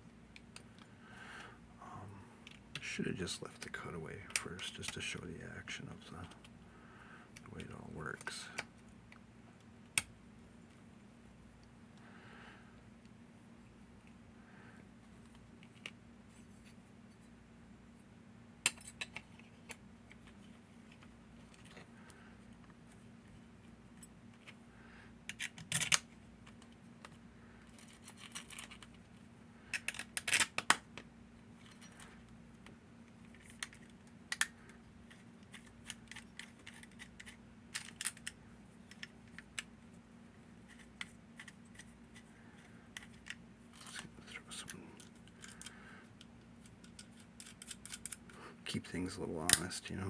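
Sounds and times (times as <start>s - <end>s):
padlock parts clicking: 25.3s - 27.2s, 29.7s - 30.8s, 33.4s - 39.7s, 46.6s - 48.4s.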